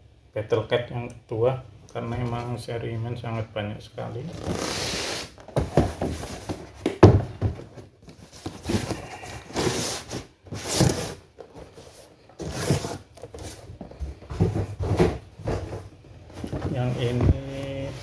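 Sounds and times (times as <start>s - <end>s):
cardboard and plastic packaging rustling: 4.1s - 18.0s.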